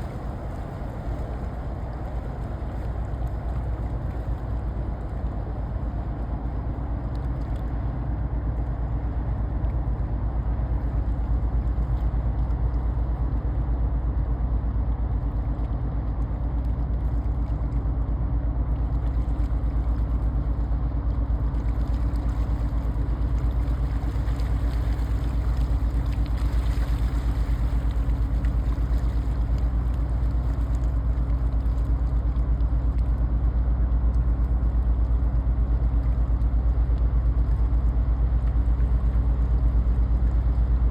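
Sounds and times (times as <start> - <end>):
ship diesel engine rumble: 0.0 - 16.0.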